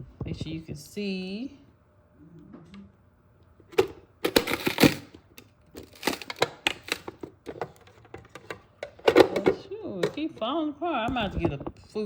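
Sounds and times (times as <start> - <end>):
plastic vegetable chopper clacking: 3.8 - 5.1, 5.8 - 9.6.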